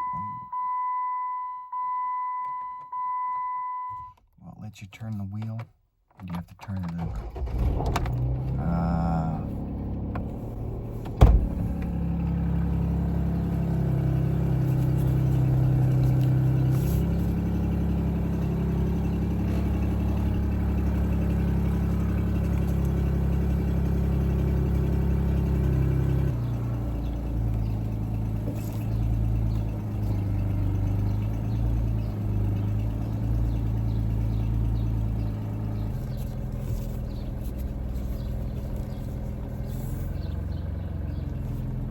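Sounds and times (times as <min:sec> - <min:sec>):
car engine idling: 0:07.0 - 0:41.9
sharp thump: 0:11.1 - 0:12.0.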